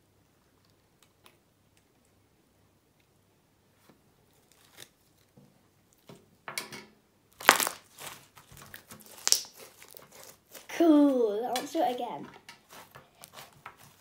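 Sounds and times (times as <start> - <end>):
slime crackling pops: 7.4 - 10.0.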